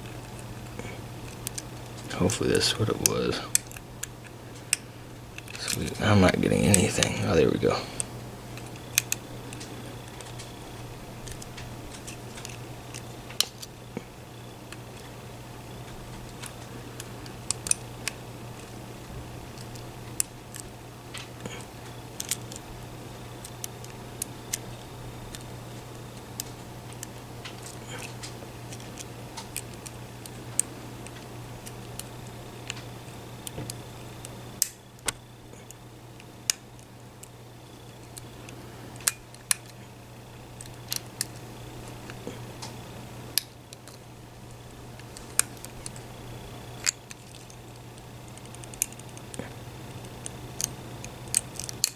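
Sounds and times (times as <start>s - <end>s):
low electrical hum: 0.0s - 51.9s
lock picks clicking in lock: 46.8s - 51.9s.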